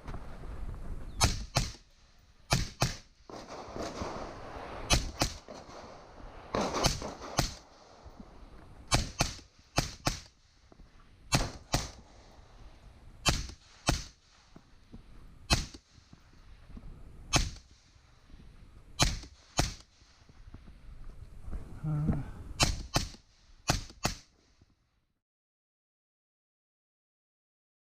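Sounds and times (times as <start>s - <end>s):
gunshots: 1.2s - 1.9s, 2.5s - 8.2s, 8.8s - 10.5s, 11.3s - 12.3s, 13.2s - 14.4s, 15.5s - 16.1s, 17.3s - 17.8s, 19.0s - 20.1s, 22.6s - 24.3s.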